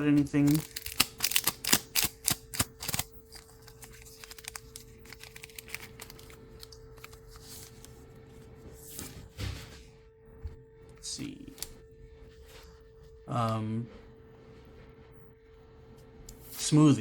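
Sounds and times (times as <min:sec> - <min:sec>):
foil wrappers crinkling and tearing: 0:00.0 - 0:08.1
faint hum: 0:00.0 - 0:17.0.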